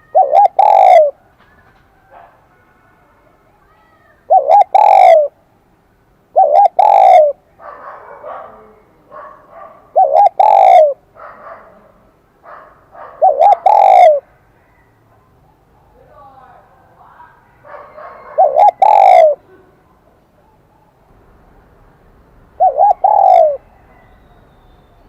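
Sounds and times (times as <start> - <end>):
dove cooing: 0.0 - 2.4, 4.3 - 5.4, 6.3 - 11.9, 12.5 - 15.0, 17.7 - 19.8, 22.6 - 24.3.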